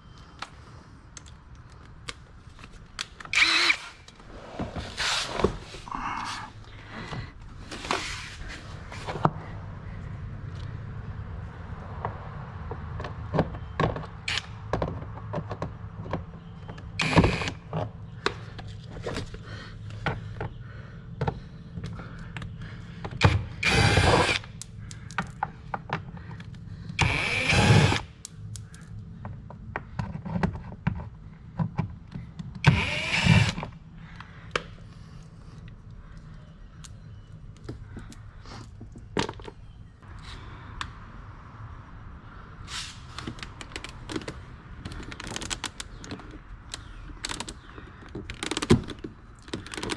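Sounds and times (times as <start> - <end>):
cordless drill running: 3.4 - 4.0, 23.6 - 24.4, 27.0 - 28.1, 32.7 - 33.6.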